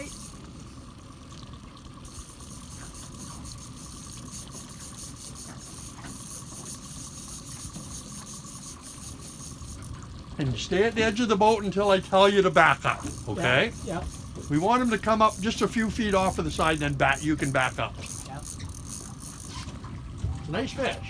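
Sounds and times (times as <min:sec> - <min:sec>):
water washing around boat: 0:00.0 - 0:21.0
faint high hum: 0:20.2 - 0:21.0.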